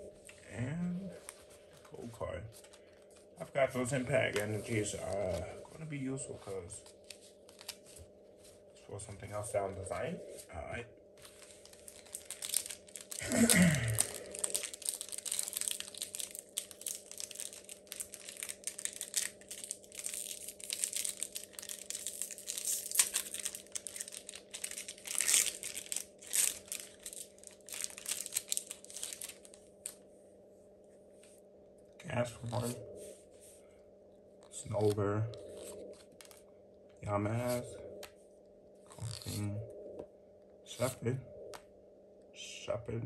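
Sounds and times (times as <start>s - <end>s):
cards rustling: 3.7s - 5.6s, 11.2s - 29.6s
foil wrapper crinkling and tearing: 7.0s - 7.9s, 11.2s - 30.0s, 35.6s - 36.4s.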